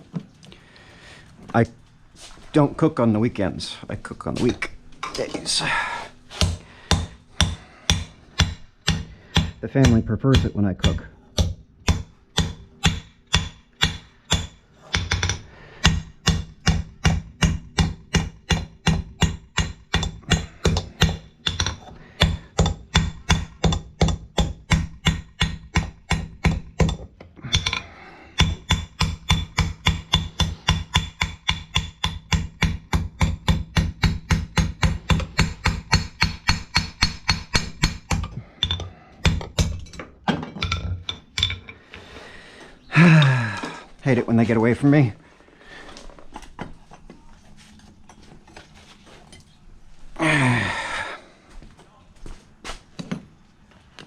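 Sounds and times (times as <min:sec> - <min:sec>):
hammer striking steel on anvil: 0:06.4 - 0:40.0.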